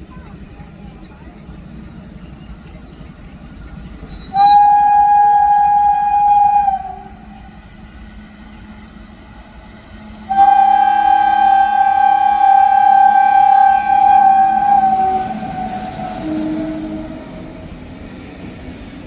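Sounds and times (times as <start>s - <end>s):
locomotive air horn blasts: 4.4s - 7.3s, 10.3s - 17.8s.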